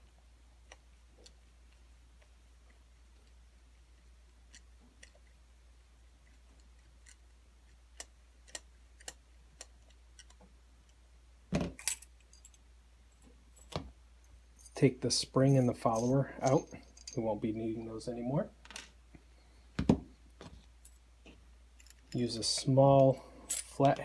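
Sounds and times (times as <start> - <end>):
metal parts clattering: 15.5 - 17.2, 23.4 - 23.8.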